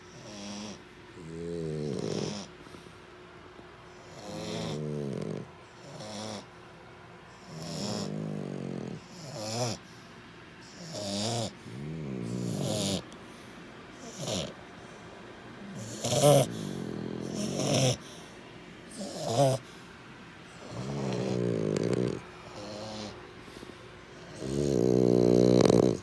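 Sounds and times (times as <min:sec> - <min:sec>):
dog snoring: 0:00.0 - 0:02.8, 0:03.9 - 0:06.5, 0:07.4 - 0:09.9, 0:10.6 - 0:14.6, 0:15.6 - 0:18.3, 0:18.9 - 0:19.8, 0:20.6 - 0:26.0.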